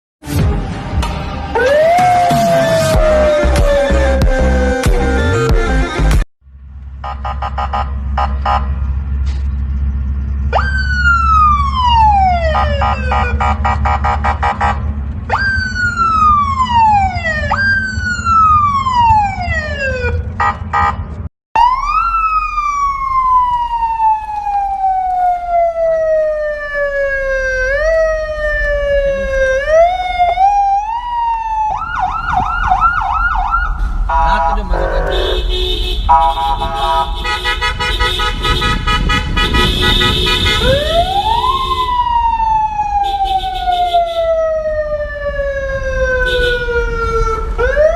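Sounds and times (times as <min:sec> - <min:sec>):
electronic police siren: 0:01.5 - 0:04.8, 0:10.5 - 0:20.2, 0:21.6 - 0:34.9, 0:40.4 - 0:47.9.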